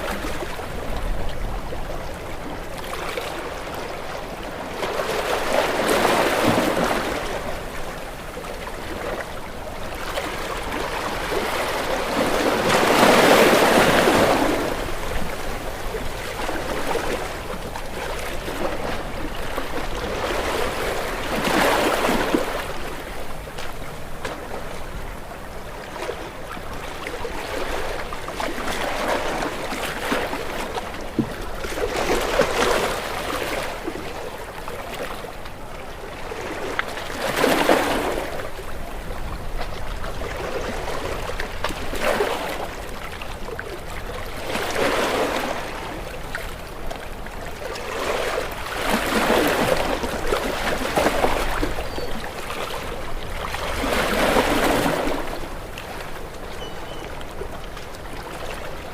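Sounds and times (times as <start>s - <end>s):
constant wash of water: 0.0s - 58.9s
waves breaking against rocks: 2.5s - 7.9s, 9.9s - 24.8s, 25.9s - 35.2s, 36.2s - 58.9s.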